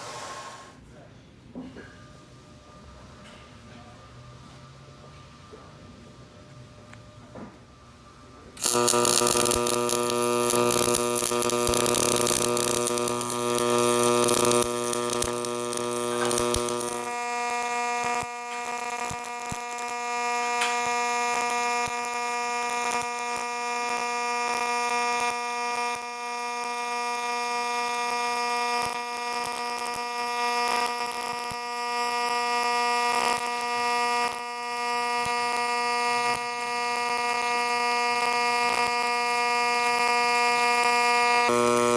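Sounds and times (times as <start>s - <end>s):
welding arc buzzing: 8.6s - 41.9s.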